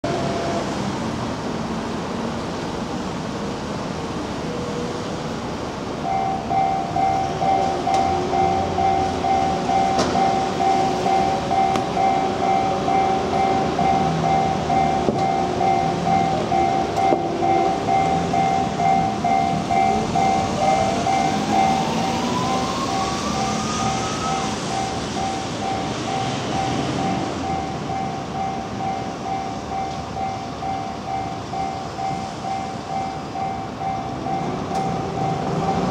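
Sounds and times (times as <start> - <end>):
electric train passing: 0.1 - 35.9
level crossing alarm ringing: 6.0 - 35.9
train motor whine rising: 7.1 - 28.5.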